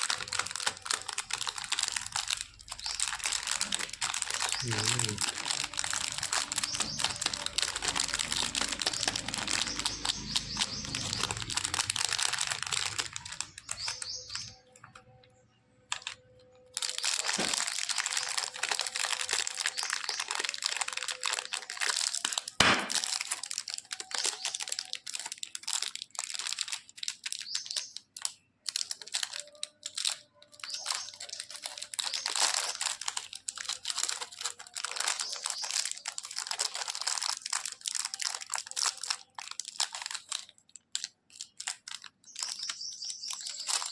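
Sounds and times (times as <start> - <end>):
candy wrappers crinkling: 0.0 - 43.9
sharp crack: 17.2 - 17.9, 22.2 - 23.5.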